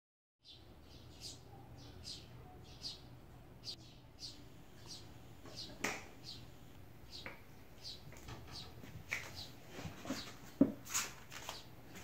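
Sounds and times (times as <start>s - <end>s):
bird chirping: 0.4s - 10.6s.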